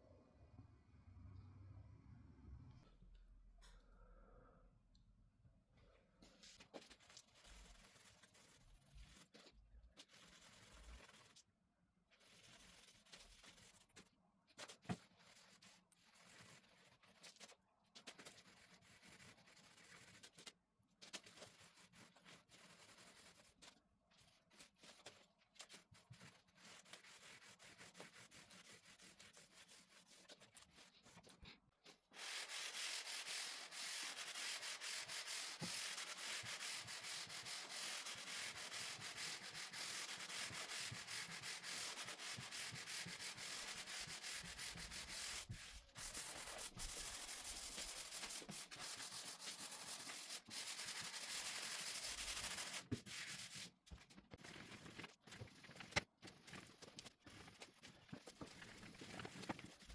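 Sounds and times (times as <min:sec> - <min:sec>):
faint scratching: 0:21.2 - 0:59.9.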